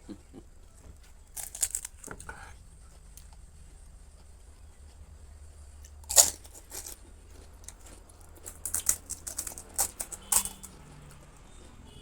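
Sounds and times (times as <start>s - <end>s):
crisp shells crunching: 1.2s - 2.1s, 5.8s - 10.8s.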